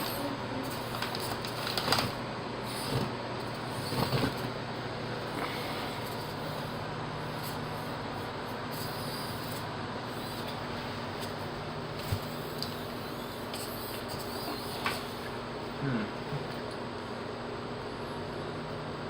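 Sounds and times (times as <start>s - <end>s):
small electric motor whirring: 5.4s - 15.4s.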